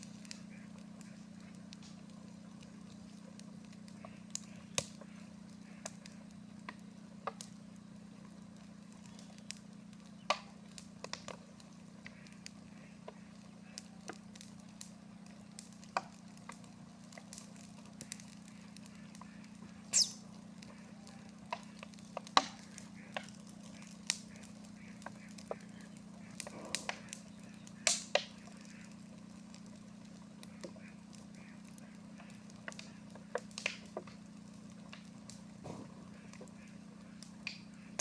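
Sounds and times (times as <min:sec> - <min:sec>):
fire crackling and popping: 0:00.0 - 0:38.0
steady low hum: 0:00.0 - 0:38.0.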